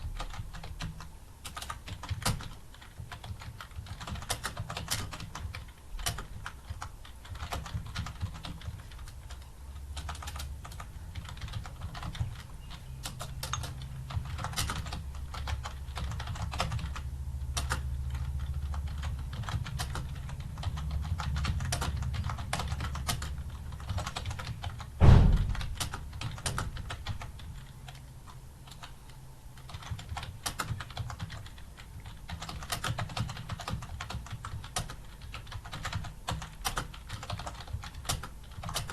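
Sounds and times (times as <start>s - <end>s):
computer keyboard typing: 0.0s - 38.9s
loud thump: 25.0s - 25.7s.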